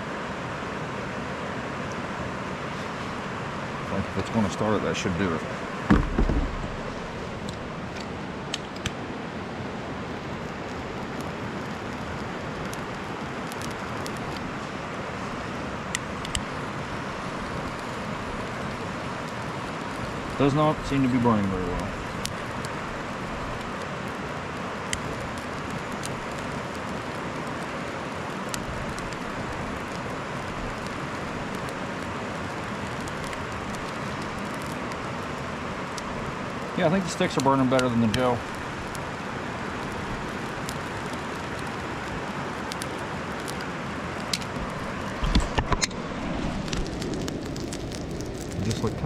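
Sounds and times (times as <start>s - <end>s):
campfire popping: 0.0s - 49.0s
creek rushing: 0.0s - 49.0s
loud low thumps: 5.9s - 7.3s.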